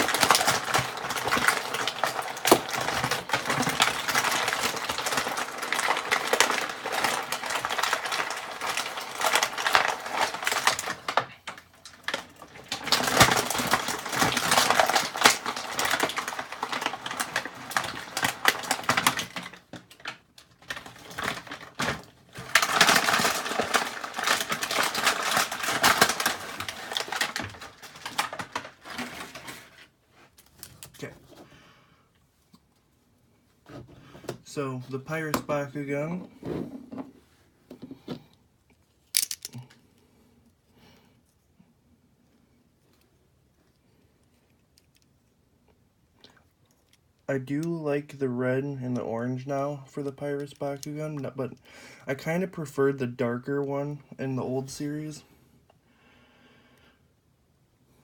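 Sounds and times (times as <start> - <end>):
plastic packaging crinkling: 0.0 - 31.1, 38.9 - 39.7.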